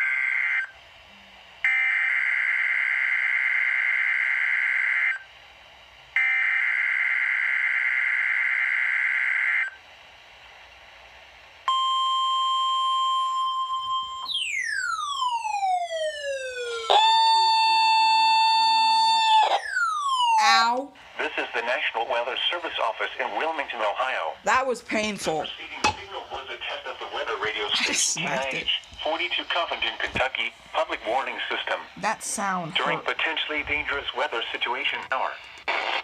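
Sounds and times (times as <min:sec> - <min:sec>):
alarm tone sliding down in pitch: 0:14.7 - 0:20.8.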